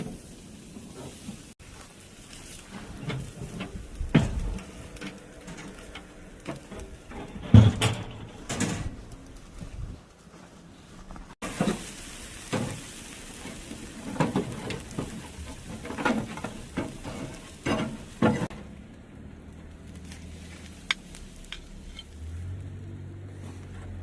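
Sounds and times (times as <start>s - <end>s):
steaks sizzling on a grill: 0.0s - 7.1s, 11.4s - 18.5s, 19.8s - 22.6s
knocks and scrapes of handling: 14.0s - 18.6s.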